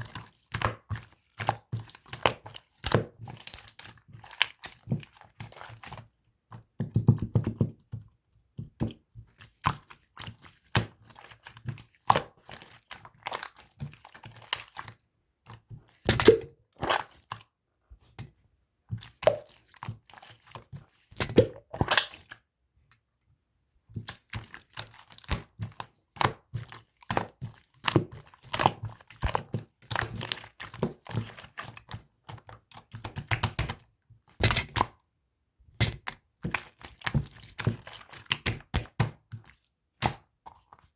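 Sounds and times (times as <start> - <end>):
slime squelches: 0.0 - 8.0, 8.6 - 18.2, 18.9 - 23.0, 24.0 - 35.0, 35.8 - 40.9
air bubbles popping: 21.3 - 22.2.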